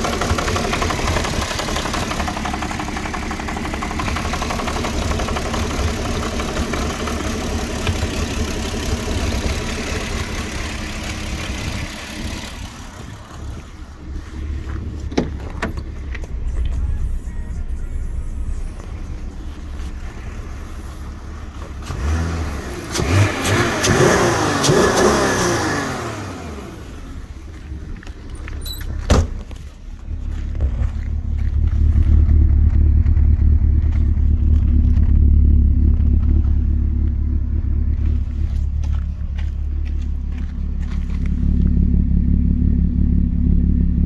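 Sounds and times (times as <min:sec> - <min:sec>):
car engine idling and revving: 0:00.0 - 0:44.0.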